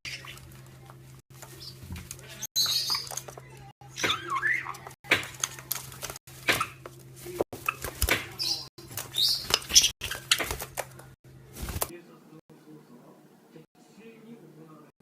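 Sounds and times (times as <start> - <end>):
parrot squawking: 0.0 - 0.5, 3.8 - 5.0.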